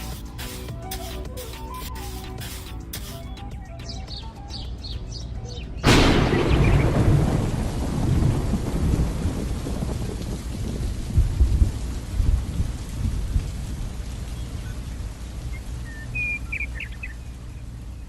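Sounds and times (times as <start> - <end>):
steady rain: 0.0 - 3.4, 5.0 - 18.0
thunderclap and rumbling thunder: 5.8 - 14.1.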